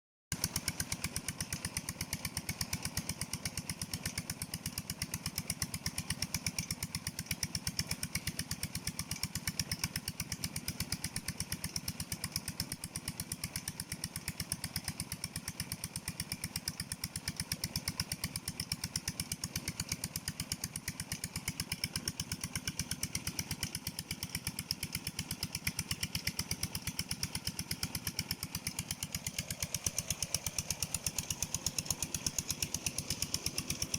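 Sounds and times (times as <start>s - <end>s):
pump engine running: 0.3s - 33.9s.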